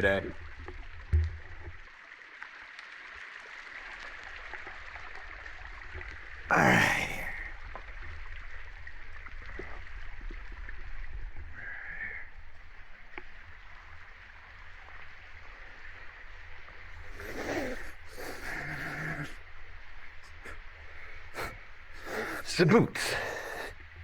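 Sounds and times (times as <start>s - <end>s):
breathy bursts: 6.5s - 7.5s, 17.0s - 23.8s
waterfall and stream rushing: 20.3s - 23.7s.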